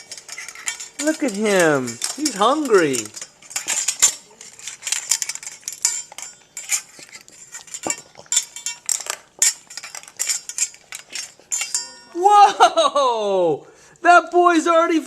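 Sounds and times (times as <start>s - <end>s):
puppy eating from a bowl: 0.0s - 11.8s
bowl clinking and clattering: 0.0s - 12.2s.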